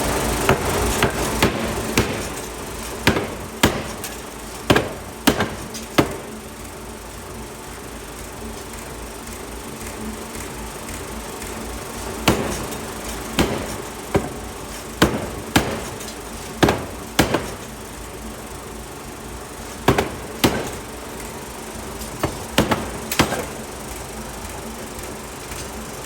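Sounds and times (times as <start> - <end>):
machine drone: 0.0 - 26.0
hammer striking metal: 0.5 - 6.4, 12.2 - 17.8, 19.8 - 20.9, 22.2 - 23.6.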